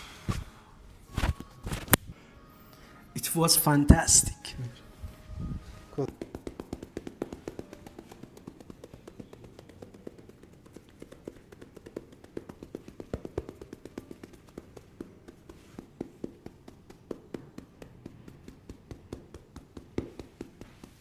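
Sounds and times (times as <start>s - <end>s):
hands tapping: 1.2s - 2.0s, 6.0s - 21.0s.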